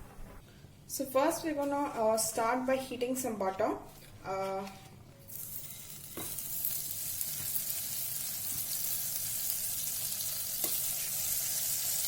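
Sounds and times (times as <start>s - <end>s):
butter sizzling in a pot: 5.3s - 12.0s.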